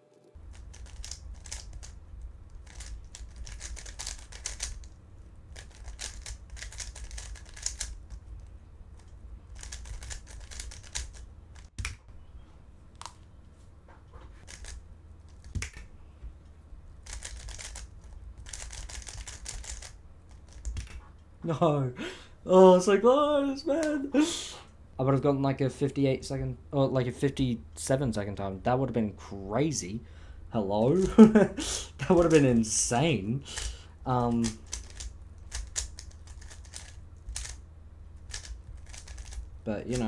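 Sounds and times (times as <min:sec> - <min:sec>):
plastic puzzle cube clicking turns: 0:00.4 - 0:08.2, 0:09.0 - 0:12.0, 0:14.4 - 0:15.9, 0:17.0 - 0:21.0, 0:34.4 - 0:37.6, 0:38.2 - 0:40.0.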